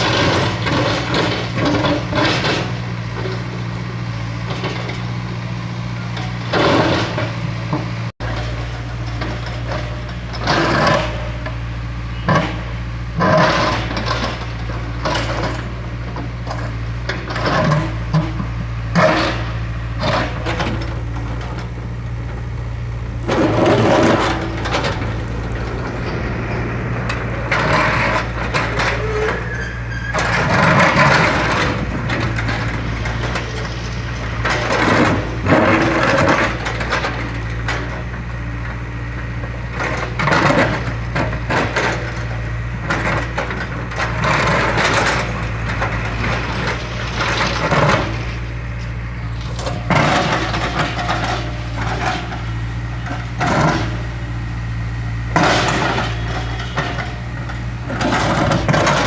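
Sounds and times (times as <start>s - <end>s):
excavator diesel engine running: 0.0s - 59.0s
concrete scraping and crushing: 23.1s - 38.0s, 43.0s - 54.1s, 55.3s - 59.0s.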